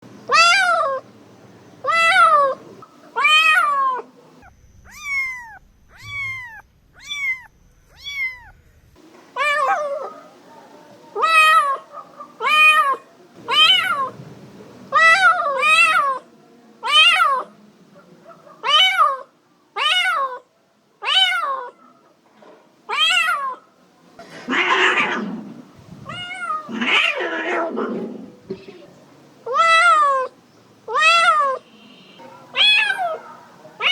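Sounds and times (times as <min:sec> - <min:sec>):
cat meowing: 0:00.3 - 0:01.0, 0:01.8 - 0:08.6, 0:09.4 - 0:10.2, 0:11.2 - 0:14.2, 0:14.9 - 0:17.5, 0:18.6 - 0:20.4, 0:21.0 - 0:21.8, 0:22.9 - 0:23.6, 0:26.0 - 0:27.8, 0:29.4 - 0:33.9
raspy cat call: 0:00.3 - 0:01.0, 0:01.8 - 0:08.6, 0:09.4 - 0:10.3, 0:11.1 - 0:14.2, 0:14.9 - 0:17.6, 0:18.4 - 0:21.8, 0:22.9 - 0:23.7, 0:24.4 - 0:28.3, 0:29.4 - 0:33.9.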